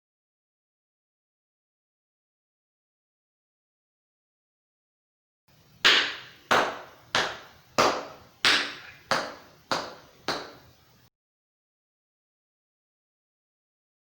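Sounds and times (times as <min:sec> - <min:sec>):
tap shoes on hard floor: 0:05.9 - 0:10.7.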